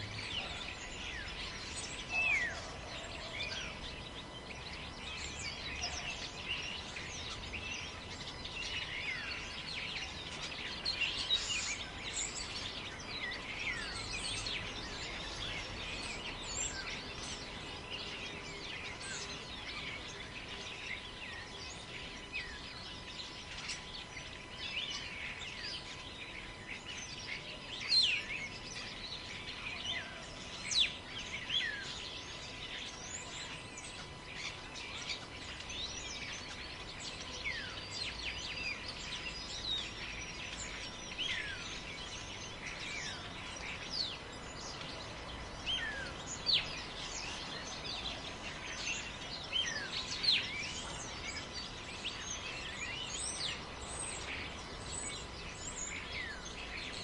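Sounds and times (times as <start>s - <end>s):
birds chirping and calling: 0.0s - 57.0s.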